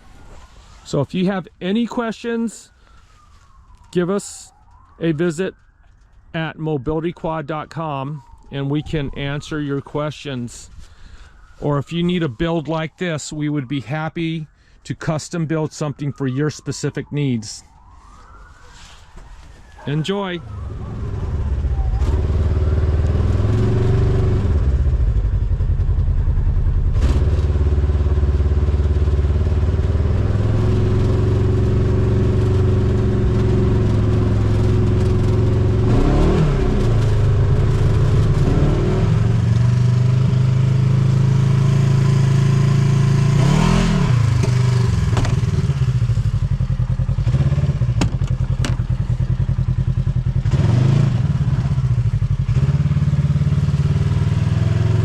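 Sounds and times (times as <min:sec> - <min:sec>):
engine revving: 0:20.5 - 0:55.0.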